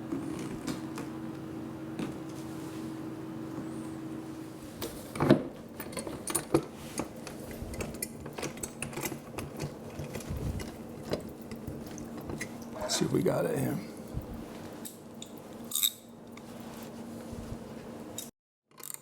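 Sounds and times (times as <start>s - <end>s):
steady low hum: 0.0s - 18.3s.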